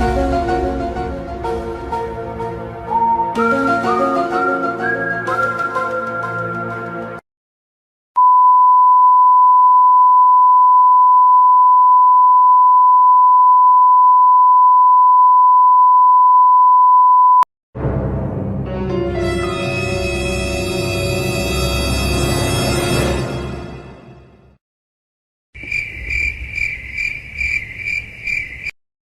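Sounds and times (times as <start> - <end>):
music: 0.0 - 7.2, 17.8 - 24.6
long electronic censor beep: 8.2 - 17.5.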